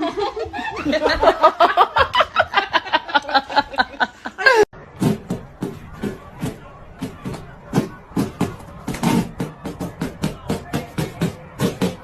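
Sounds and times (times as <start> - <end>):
hearty laughter: 0.0 - 4.7.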